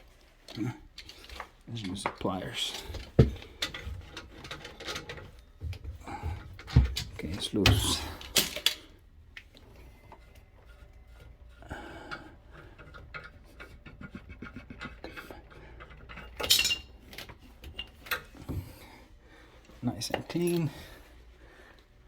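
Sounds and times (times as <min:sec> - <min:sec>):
small metal parts clinking: 0:07.0 - 0:09.0, 0:12.8 - 0:18.3
metal clatter: 0:12.6 - 0:18.3.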